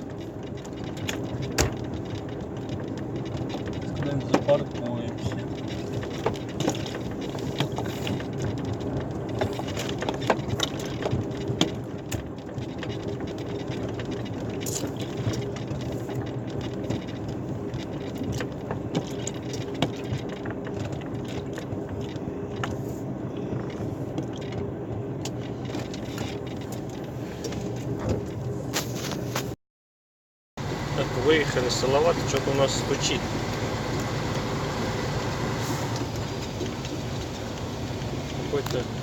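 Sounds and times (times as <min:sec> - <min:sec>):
truck engine running: 0:00.0 - 0:29.5, 0:30.6 - 0:39.0
clicks and rattles: 0:00.0 - 0:29.6.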